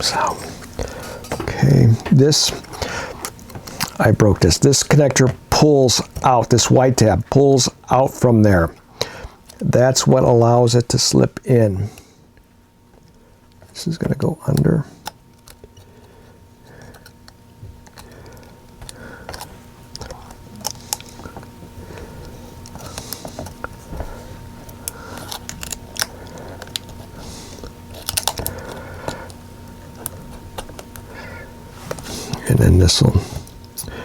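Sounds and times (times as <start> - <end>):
faint steady hum: 0.0 - 34.0
plastic parts clicking and rustling: 24.7 - 27.0, 27.9 - 28.8.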